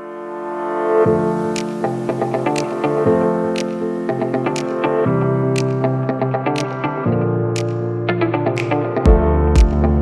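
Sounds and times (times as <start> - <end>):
electronic beat with hi-hat: 9.1 - 9.8.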